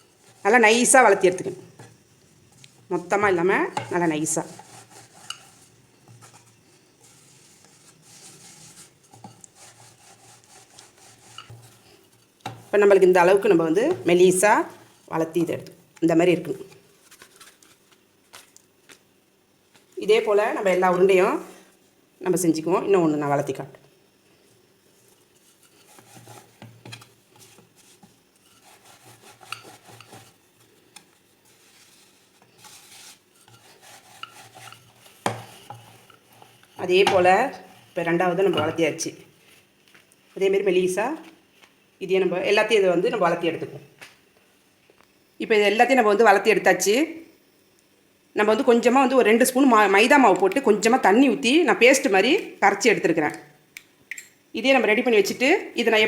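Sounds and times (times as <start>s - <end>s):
rolling pin rubbing dough: 0.0s - 15.3s, 25.0s - 39.7s.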